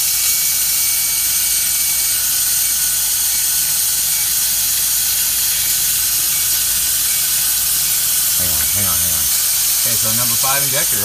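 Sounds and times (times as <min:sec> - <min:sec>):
compressed air hissing: 0:00.0 - 0:11.0.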